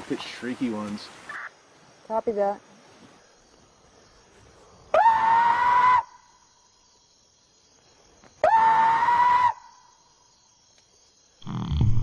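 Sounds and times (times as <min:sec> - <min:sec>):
high-pitched shrieking calls: 0:04.9 - 0:06.3, 0:08.4 - 0:09.9.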